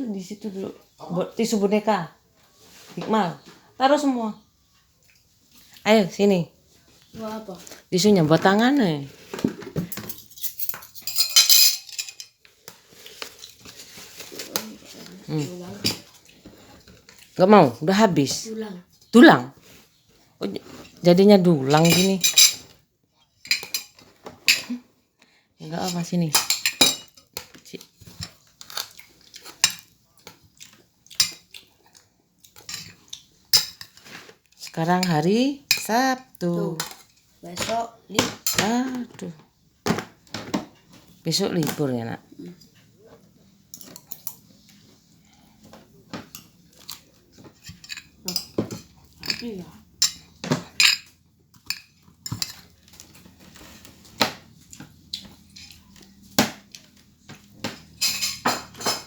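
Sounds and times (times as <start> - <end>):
cutlery clinking on a plate: 9.7 - 12.4, 21.8 - 22.7, 46.2 - 49.4, 50.0 - 53.2, 56.7 - 59.0.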